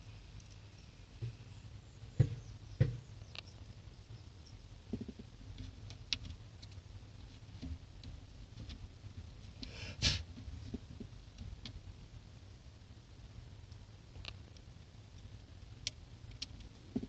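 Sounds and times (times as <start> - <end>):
small clicks and taps: 13.7 - 17.0.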